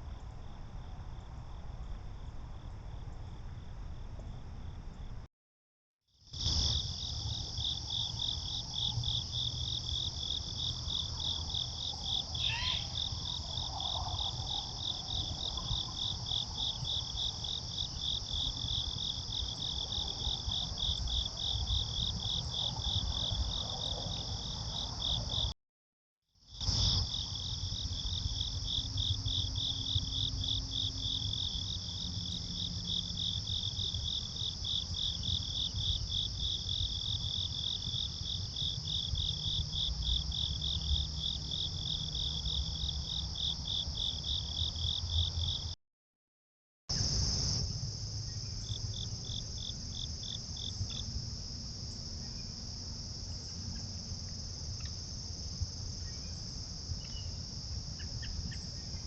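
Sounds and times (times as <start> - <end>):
cricket chirping: 0.0 - 5.2, 6.2 - 25.5, 26.5 - 45.8, 46.9 - 59.0
insects trilling: 6.2 - 25.5, 26.5 - 45.7, 46.9 - 59.0.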